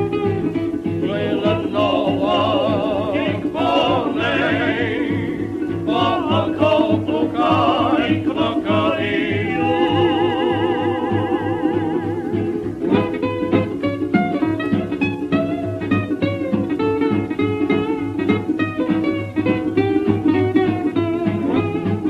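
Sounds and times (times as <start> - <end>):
singing voice with vibrato: 1.0 - 12.6.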